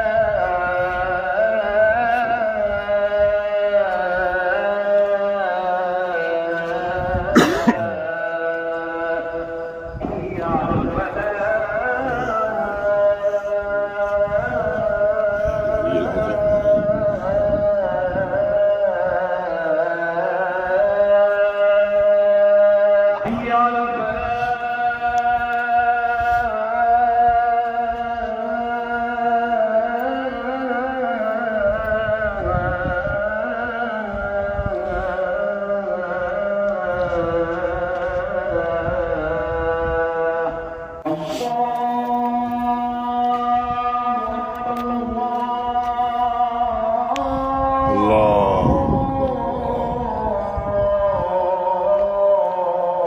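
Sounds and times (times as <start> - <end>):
man chanting call to prayer: 0.0 - 53.0
person coughing: 7.3 - 8.0
man chanting melismatic notes: 47.3 - 49.8.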